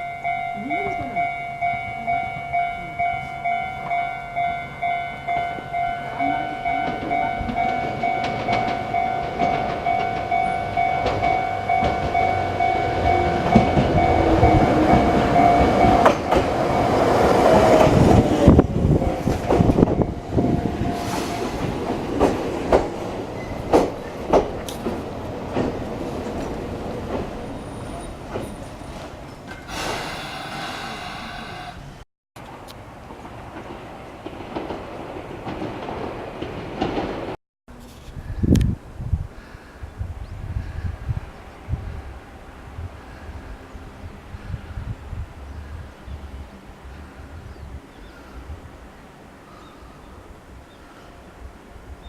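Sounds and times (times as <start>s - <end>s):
train wheels clacking over rails: 6.7s - 20.1s, 21.0s - 31.8s, 33.0s - 37.4s.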